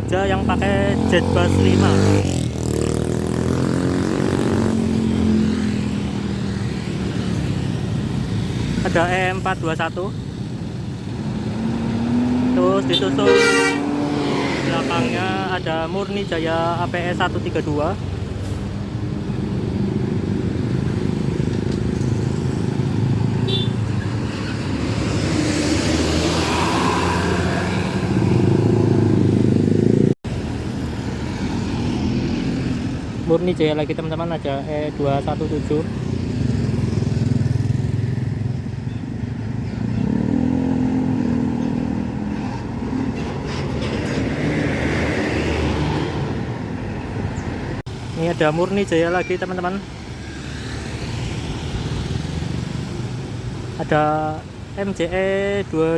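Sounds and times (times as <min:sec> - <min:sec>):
passing road traffic: 0:00.0 - 0:55.9
bus engine: 0:16.9 - 0:33.2, 0:37.6 - 0:48.2.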